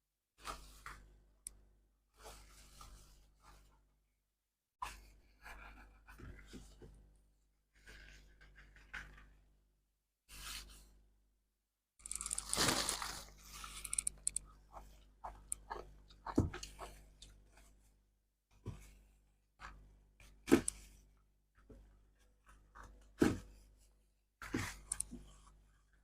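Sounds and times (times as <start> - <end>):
ice being bitten and crunched: 12.0 - 13.3.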